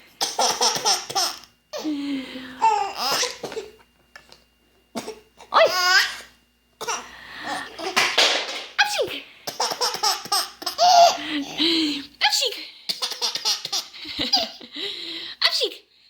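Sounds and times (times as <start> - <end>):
baby giggling and laughing: 0.2 - 1.9, 9.5 - 11.6, 12.9 - 14.6.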